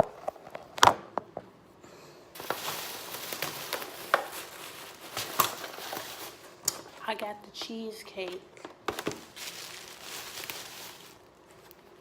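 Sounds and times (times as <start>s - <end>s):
packaging rustling and crinkling: 2.4s - 7.0s, 8.8s - 12.0s.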